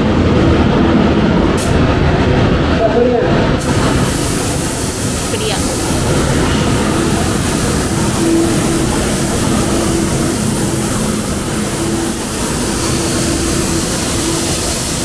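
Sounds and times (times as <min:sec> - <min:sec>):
spray gun air hiss: 0:03.6 - 0:15.0.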